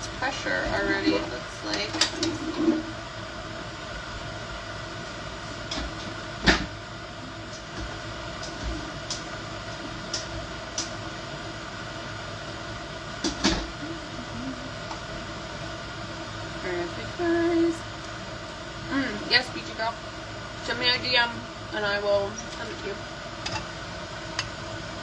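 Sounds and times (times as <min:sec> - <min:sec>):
steady background hum: 0:00.0 - 0:25.0.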